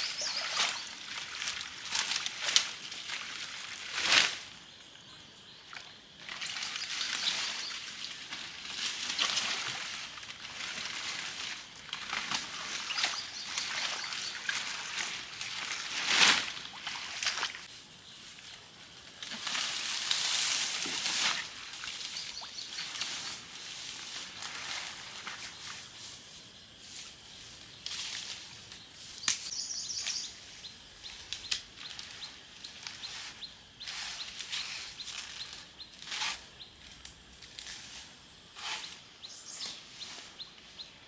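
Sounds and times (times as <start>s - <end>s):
water sloshing and splashing: 5.7s - 17.7s.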